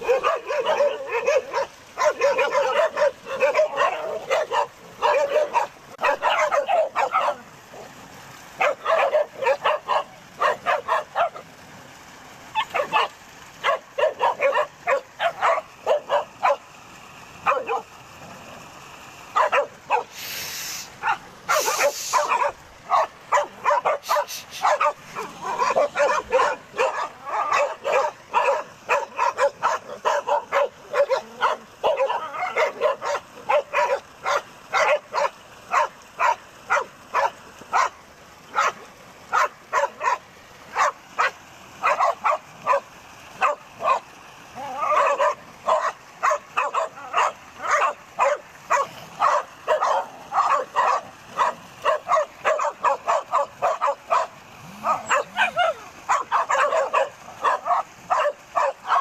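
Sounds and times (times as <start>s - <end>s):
dog barking and yipping: 0.0s - 7.9s, 8.6s - 11.5s, 12.5s - 16.7s, 17.4s - 17.9s, 19.3s - 20.2s, 21.0s - 59.0s
short hisses: 20.1s - 22.3s, 24.0s - 24.8s.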